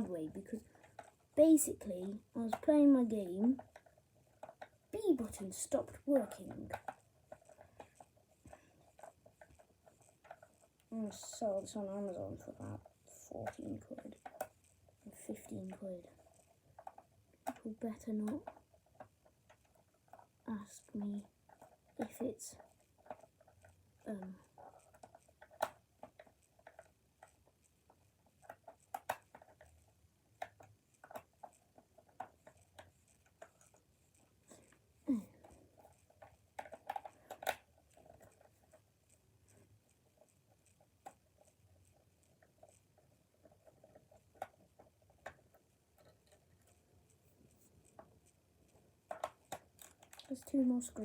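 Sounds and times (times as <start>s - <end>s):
plastic controller clicks and taps: 15.6s - 20.3s, 21.5s - 29.8s, 30.4s - 34.8s, 35.4s - 38.8s, 49.1s - 50.5s.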